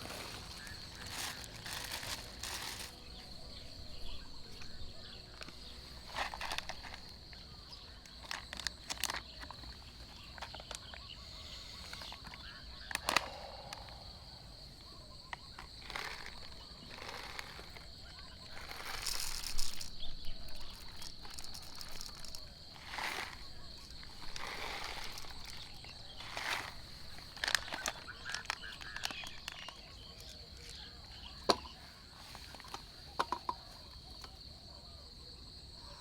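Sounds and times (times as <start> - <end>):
insects droning: 0.0 - 36.0
clicks and knocks of handling: 32.4 - 34.4.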